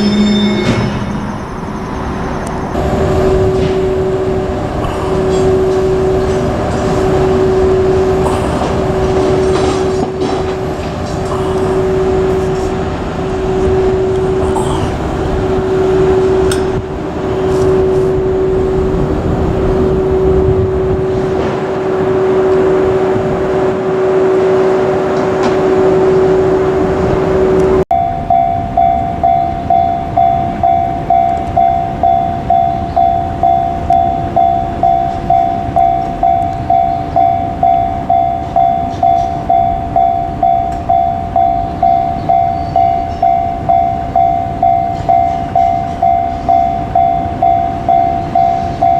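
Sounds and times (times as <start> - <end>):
level-crossing bell two-note ding: 0.0 - 2.0, 27.9 - 48.9
rushing rumble: 0.0 - 48.9.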